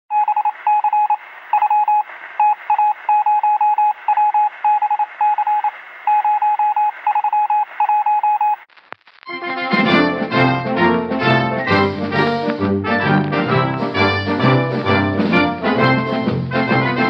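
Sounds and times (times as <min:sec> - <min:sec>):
morse code tone: 0:00.1 - 0:08.6
radio hiss: 0:03.9 - 0:07.9, 0:08.5 - 0:09.3.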